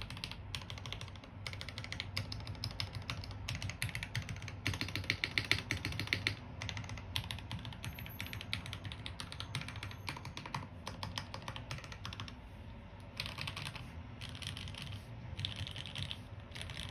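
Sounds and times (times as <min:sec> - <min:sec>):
soft mechanical keyboard typing: 0:00.0 - 0:12.4, 0:13.0 - 0:16.9.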